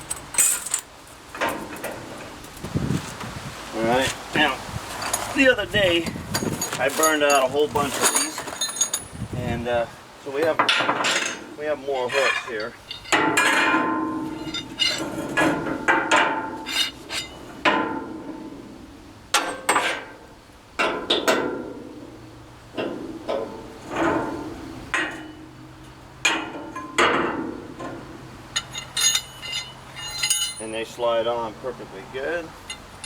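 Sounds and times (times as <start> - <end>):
metal hooks clanking and ringing: 6.4 - 9.3, 10.4 - 15.1, 28.5 - 31.0.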